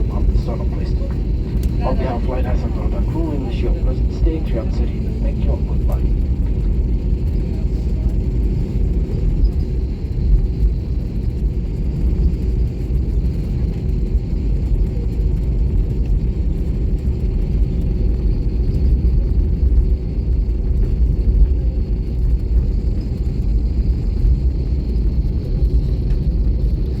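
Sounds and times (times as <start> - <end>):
jet engines idling: 0.0 - 13.4.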